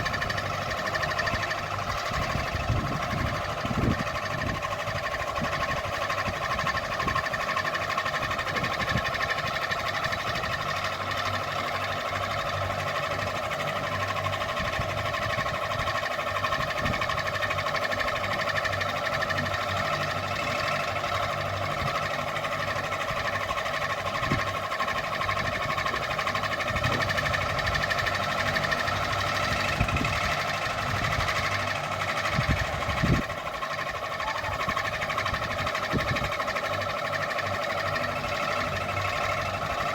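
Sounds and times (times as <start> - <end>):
ceiling fan whirring: 0.0 - 7.4, 19.3 - 39.9.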